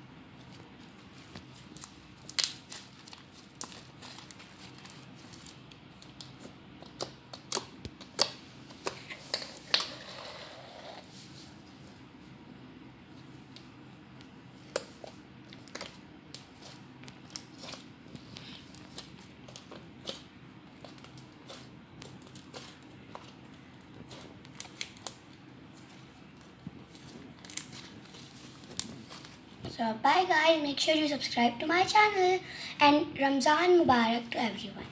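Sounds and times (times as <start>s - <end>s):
slime clicking and popping: 6.0s - 9.0s.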